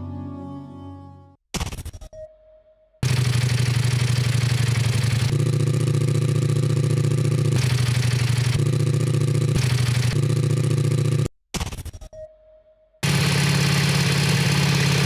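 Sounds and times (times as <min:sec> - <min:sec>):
motorcycle engine running steadily: 0:03.0 - 0:11.3, 0:13.0 - 0:15.0.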